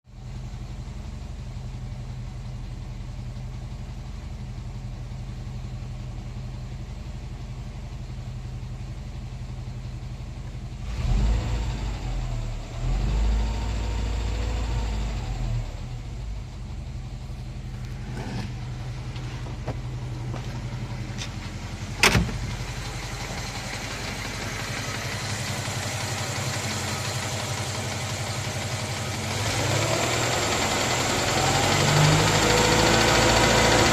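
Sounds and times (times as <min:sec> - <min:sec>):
engine revving: 0:10.8 - 0:16.3, 0:17.7 - 0:19.4, 0:20.3 - 0:33.9
car engine idling with knock: 0:16.1 - 0:33.9.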